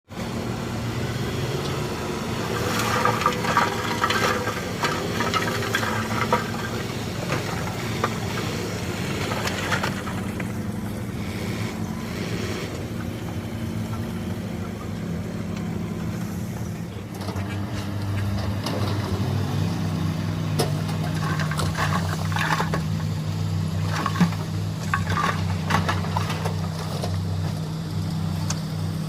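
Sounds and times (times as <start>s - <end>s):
heavy machinery diesel engine: 0.1s - 29.0s
metal scraping: 2.5s - 13.2s.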